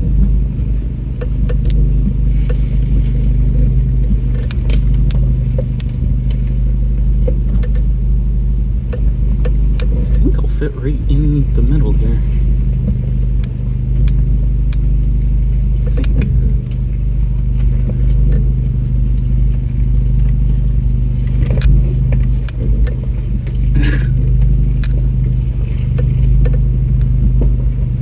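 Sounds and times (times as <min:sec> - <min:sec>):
knocks and rattles from vehicle: 0:00.0 - 0:28.0
off-road vehicle engine running: 0:00.0 - 0:28.0.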